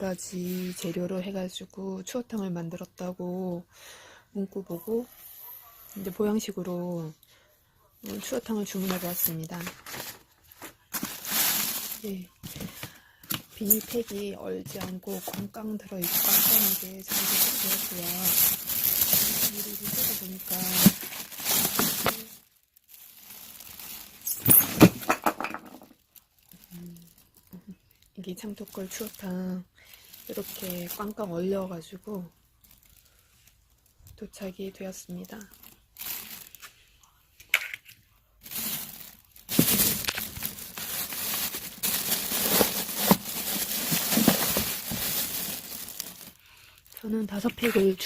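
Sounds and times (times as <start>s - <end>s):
plastic crinkling: 8.0s - 31.4s, 32.5s - 34.2s, 34.9s - 36.7s, 38.4s - 48.0s
frozen pouches cracking and clicking: 16.0s - 24.6s, 38.4s - 47.8s.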